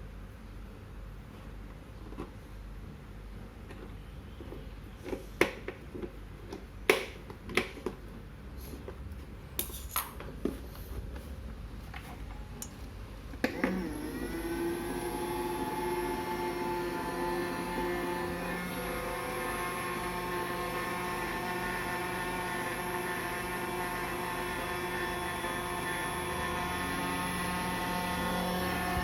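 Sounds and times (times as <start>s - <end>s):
robot vacuum motor humming: 13.4s - 29.0s.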